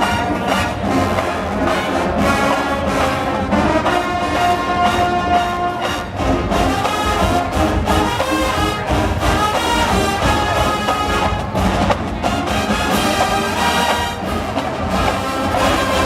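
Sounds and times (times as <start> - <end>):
marching band playing: 0.0 - 16.0.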